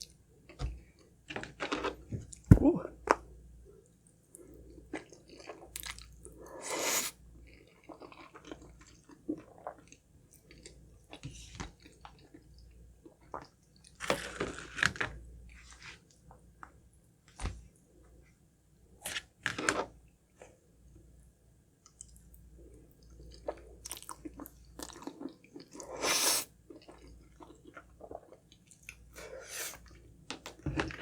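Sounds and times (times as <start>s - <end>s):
person chewing food crunchily: 4.7s - 6.4s, 23.3s - 26.0s.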